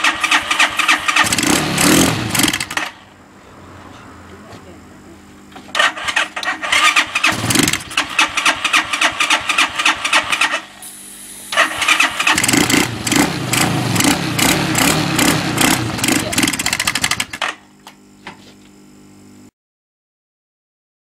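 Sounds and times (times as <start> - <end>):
quad bike engine cranking: 0.0 - 3.0, 5.7 - 10.8, 11.5 - 17.6
engine firing and running roughly: 0.0 - 3.1, 5.6 - 17.6.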